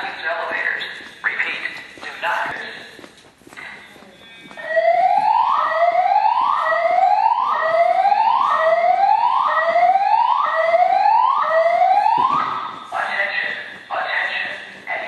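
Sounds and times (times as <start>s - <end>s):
fire alarm whoop tone: 4.6s - 12.9s.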